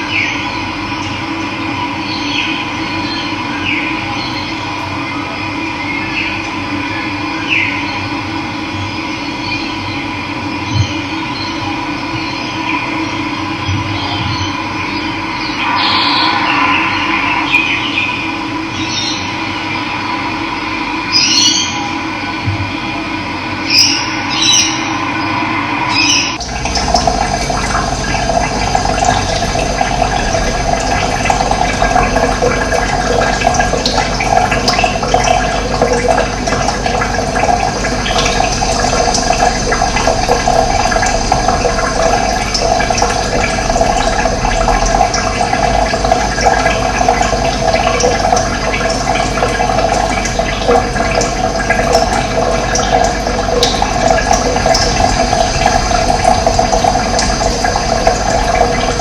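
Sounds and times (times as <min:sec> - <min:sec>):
running water: 0:23.6 - 0:59.0.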